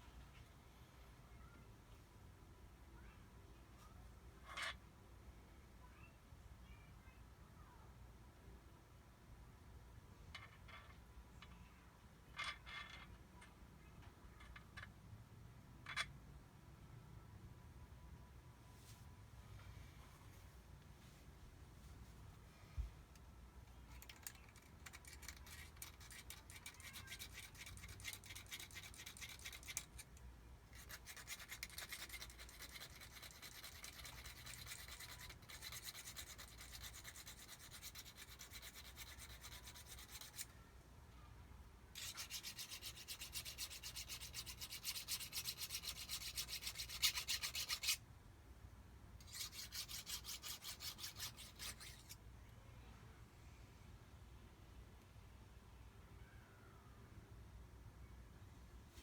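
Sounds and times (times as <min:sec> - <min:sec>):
hand file rasping on metal: 0:30.7 - 0:40.5, 0:42.0 - 0:48.0, 0:49.2 - 0:52.2.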